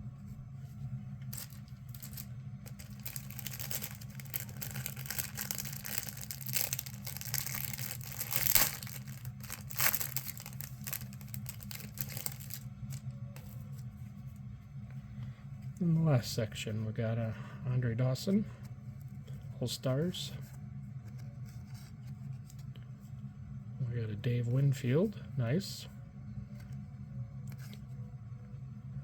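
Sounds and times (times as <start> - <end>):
low hum: 0.0 - 29.0
plastic wrapper crinkling and tearing: 1.2 - 13.8.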